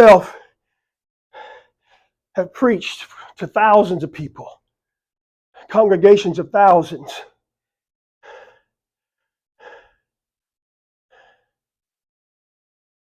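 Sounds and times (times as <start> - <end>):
man breathing: 0.2 - 2.2, 8.2 - 8.8, 9.6 - 10.1, 11.1 - 11.6.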